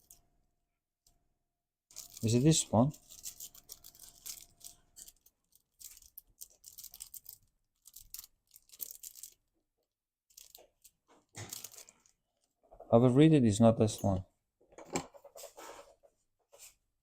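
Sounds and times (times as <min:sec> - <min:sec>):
packets rustling: 0:01.9 - 0:09.4, 0:10.3 - 0:12.2.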